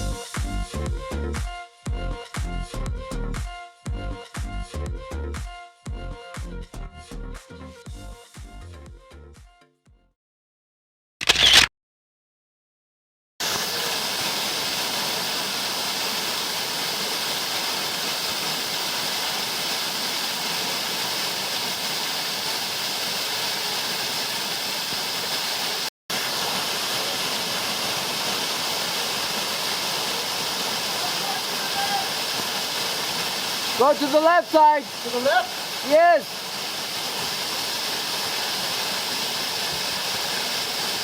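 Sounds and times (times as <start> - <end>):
waterfall rushing: 13.4 - 41.0.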